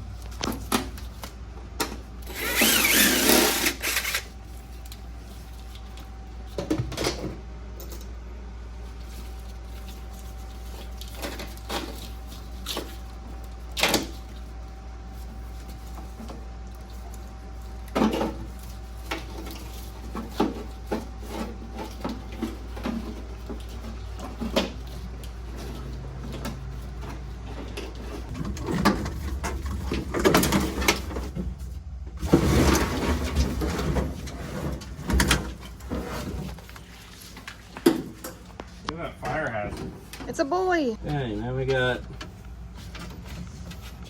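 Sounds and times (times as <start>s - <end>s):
steady low hum: 0.0s - 44.0s
rustling and scraping: 8.7s - 39.2s, 39.9s - 44.0s
wires knocking and rattling: 21.8s - 36.7s.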